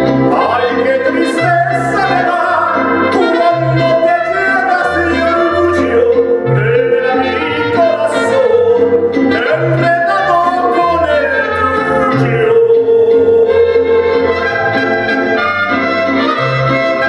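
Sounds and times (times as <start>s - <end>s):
band playing: 0.0s - 17.0s
person singing: 0.1s - 14.4s
pulsing bass line: 5.0s - 16.0s.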